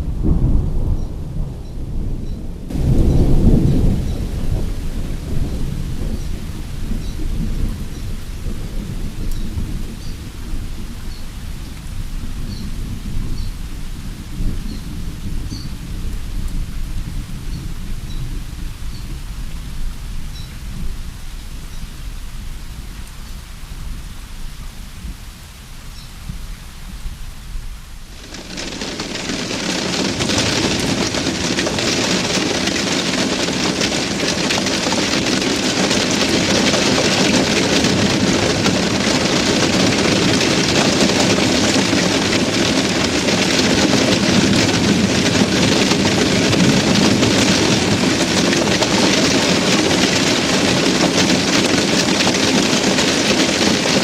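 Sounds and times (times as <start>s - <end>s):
heavy rain: 0.0s - 25.8s, 27.4s - 54.0s
low rumble: 28.0s - 49.6s.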